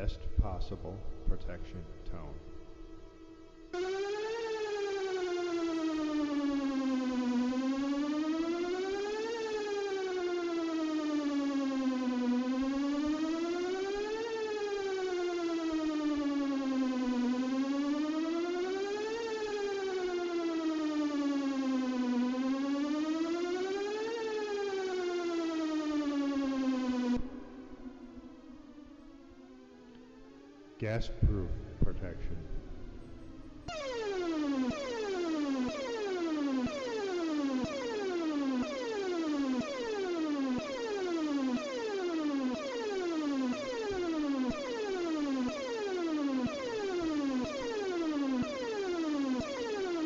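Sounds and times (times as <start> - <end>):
outdoor warning siren wailing: 0.0 - 30.9, 31.7 - 50.0.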